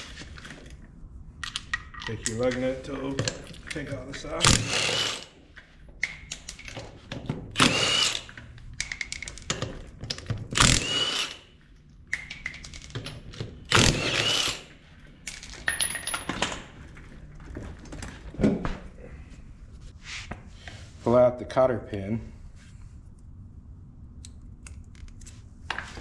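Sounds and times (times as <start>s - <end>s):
impact wrench whining: 4.2s - 5.5s, 7.2s - 11.6s, 12.2s - 18.4s
clatter of nuts and tool: 12.2s - 18.4s.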